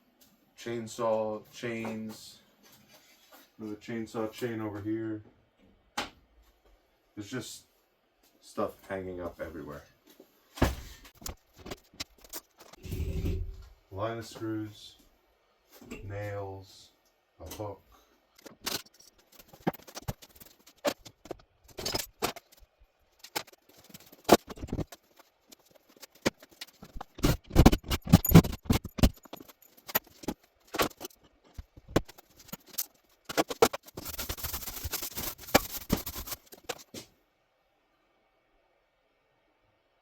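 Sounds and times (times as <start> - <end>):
knocks and clatters: 23.2 - 37.0.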